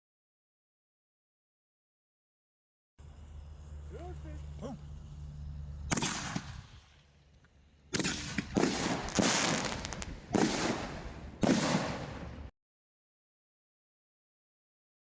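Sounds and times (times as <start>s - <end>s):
firework shells bursting: 5.8s - 12.5s.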